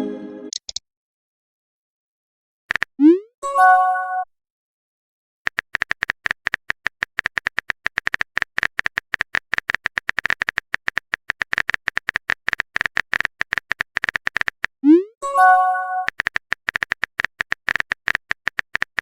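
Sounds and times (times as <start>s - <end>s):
keyboard typing clicks: 0.5s - 0.8s, 5.5s - 14.7s, 16.0s - 19.0s.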